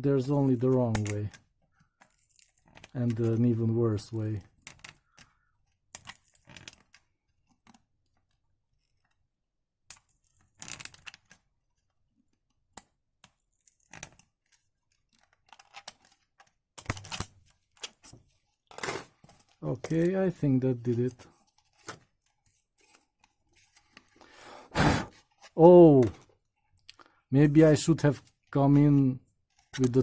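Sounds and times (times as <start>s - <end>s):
plastic scraping and rustling: 13.4s - 24.2s, 27.7s - 30.0s.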